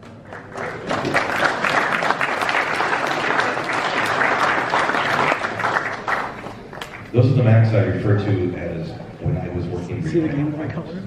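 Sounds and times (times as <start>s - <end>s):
audience applauding: 0.0s - 7.2s.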